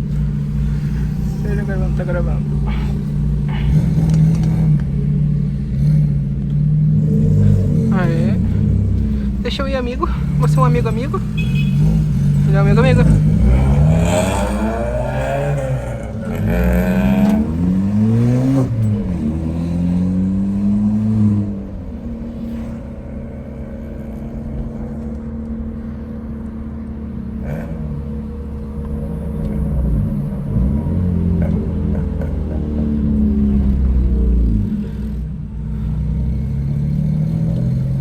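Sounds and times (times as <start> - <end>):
car engine accelerating: 0.0 - 38.0.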